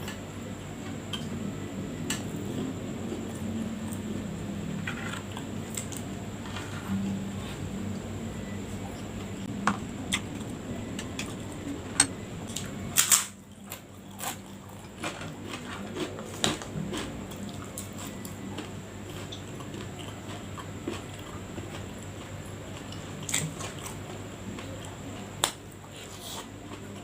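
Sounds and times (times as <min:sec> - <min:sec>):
chewing: 0:13.5 - 0:25.3.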